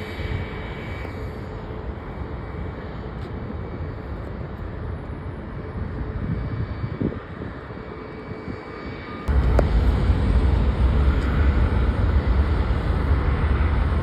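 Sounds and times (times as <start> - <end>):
jet engine rumble with whine: 0.0 - 14.0.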